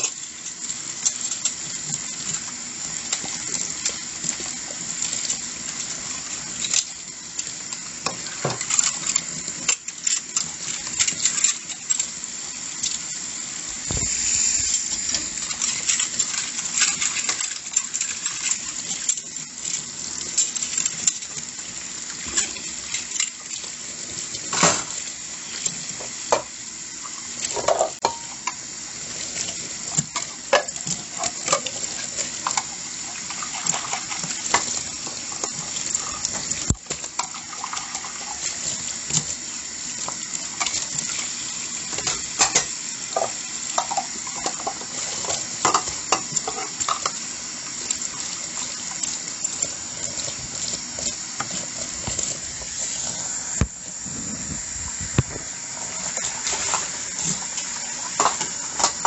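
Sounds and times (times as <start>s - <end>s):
water running from tap: 0.0s - 59.0s
dishes and utensils clinking: 27.4s - 28.6s.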